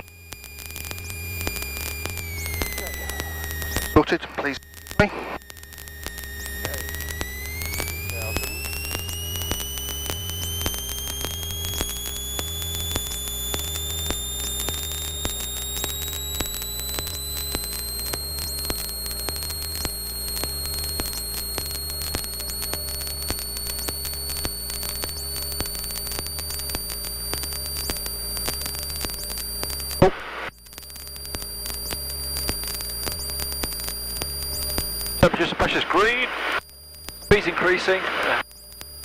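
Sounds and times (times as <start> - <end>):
aircraft engine drone: 0.0 - 30.0
crackling static: 0.0 - 39.0
high whine: 0.0 - 39.0.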